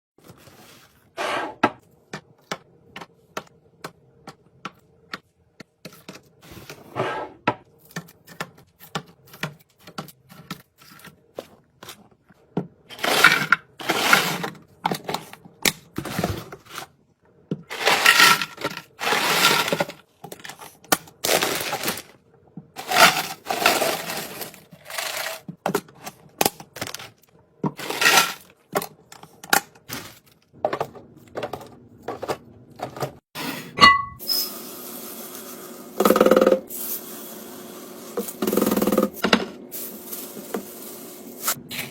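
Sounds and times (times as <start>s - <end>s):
plastic containers clicking and clinking: 12.9s - 16.8s, 17.5s - 22.1s, 22.8s - 33.2s
packaging rustling: 17.7s - 22.1s, 22.8s - 25.4s, 27.8s - 28.4s.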